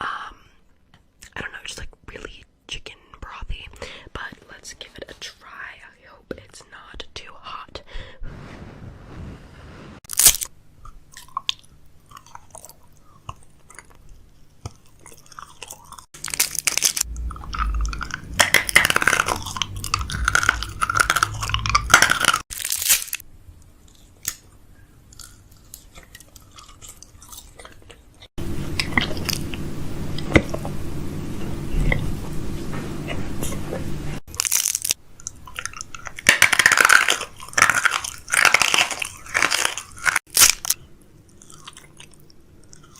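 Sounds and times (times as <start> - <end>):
chewing and crunching food: 10.1 - 29.6, 34.3 - 42.9.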